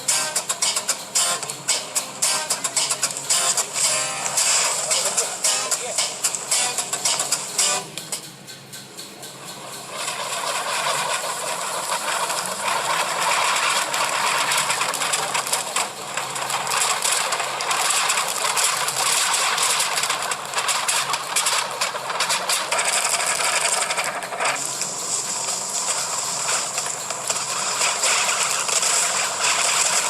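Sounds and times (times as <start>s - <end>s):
firework hissing and crackling: 9.8s - 30.0s.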